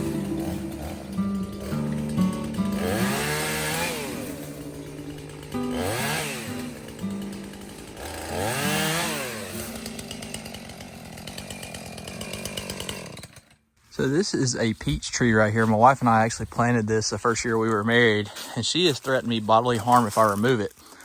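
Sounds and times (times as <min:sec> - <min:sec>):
background music: 0:00.0 - 0:09.8
chainsaw engine revving: 0:00.0 - 0:21.0.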